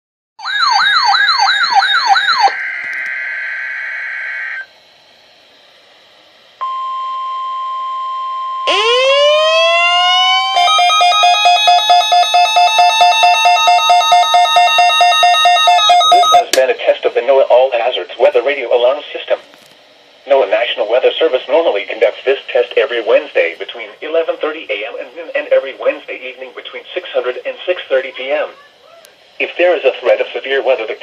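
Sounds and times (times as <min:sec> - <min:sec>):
electronic siren yelp: 0:00.4 - 0:04.7, 0:06.6 - 0:16.6
siren winding up: 0:00.4 - 0:04.7, 0:06.6 - 0:16.6
rapidly pulsing alarm: 0:00.4 - 0:04.9, 0:06.6 - 0:17.9
steady high tone: 0:06.6 - 0:16.7.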